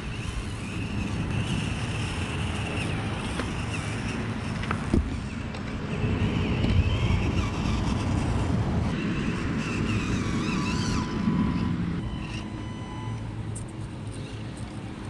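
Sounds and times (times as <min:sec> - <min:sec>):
small electric motor whining: 0:00.0 - 0:15.0
wind rumble on microphone: 0:00.0 - 0:15.0.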